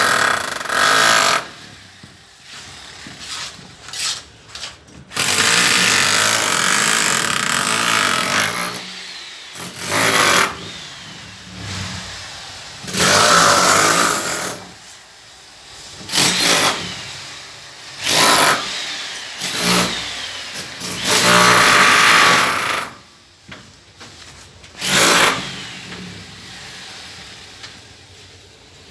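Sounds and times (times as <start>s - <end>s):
power tool motor: 0.0s - 3.4s, 5.2s - 12.2s, 12.8s - 14.7s, 16.1s - 17.3s, 18.0s - 23.0s, 24.8s - 27.6s.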